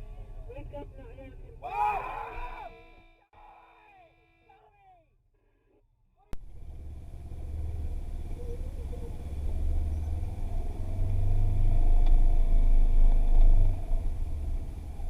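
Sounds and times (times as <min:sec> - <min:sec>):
vehicle engine rumbling: 0:06.4 - 0:15.0.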